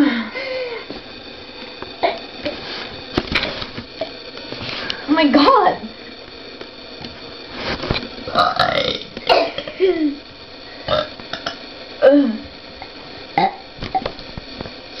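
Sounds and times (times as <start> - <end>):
girl burping loudly: 8.3 - 10.2, 10.9 - 12.4, 13.4 - 13.6.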